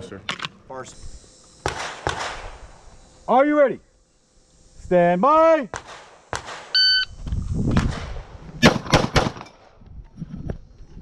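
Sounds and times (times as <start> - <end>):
handgun shots: 1.6 - 2.5, 5.7 - 6.8, 8.6 - 9.5
shot timer beep: 6.8 - 7.2.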